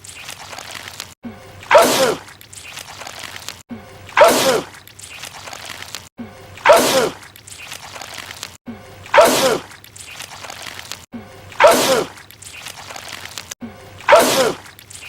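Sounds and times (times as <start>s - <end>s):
man sneezing: 6.6s - 7.2s, 9.1s - 9.7s, 11.6s - 12.1s, 14.1s - 14.6s.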